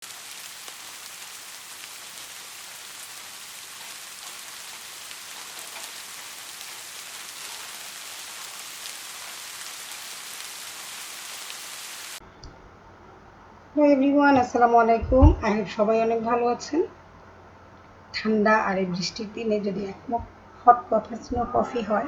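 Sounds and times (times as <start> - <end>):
steady rain falling: 0.0 - 12.2.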